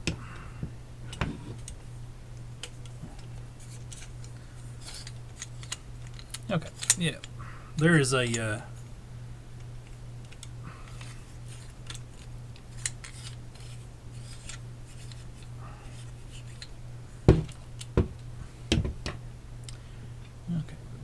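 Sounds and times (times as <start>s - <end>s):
metal parts clicking and scraping: 2.6s - 7.3s, 10.2s - 16.8s.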